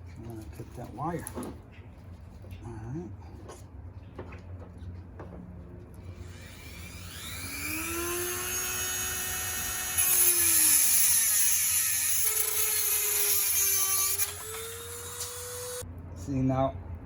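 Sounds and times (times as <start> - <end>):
power tool whining: 6.2 - 15.8
tool grinding through wire: 6.2 - 15.8.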